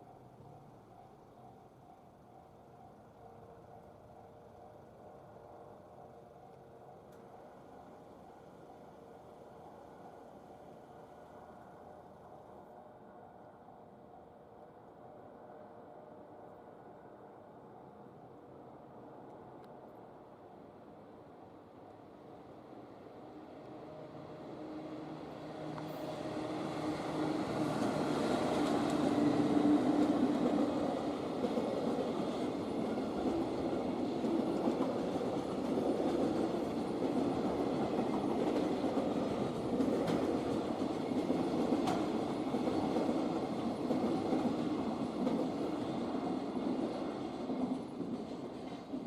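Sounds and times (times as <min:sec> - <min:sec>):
train passing: 0:00.0 - 0:49.0
train wheels clacking: 0:25.6 - 0:49.0.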